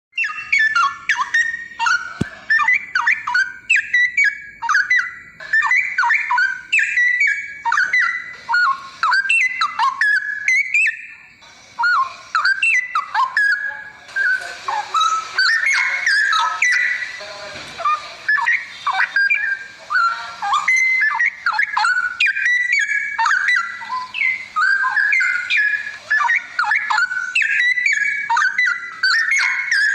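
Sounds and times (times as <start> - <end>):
bird singing liquid whistled notes: 0.1 - 29.9.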